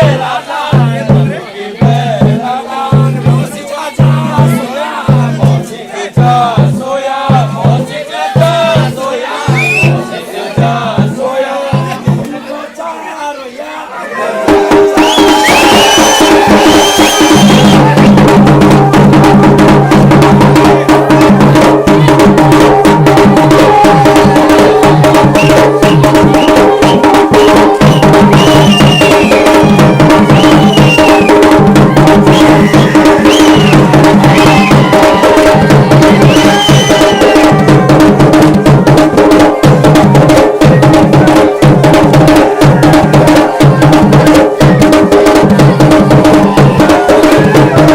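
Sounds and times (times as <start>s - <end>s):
drums playing fast rhythm: 0.0s - 12.8s, 14.3s - 47.9s.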